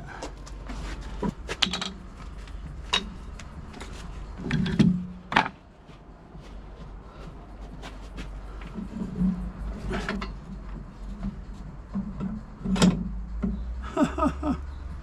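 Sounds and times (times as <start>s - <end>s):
tools and timber knocking: 0.1s - 5.6s, 7.8s - 13.8s.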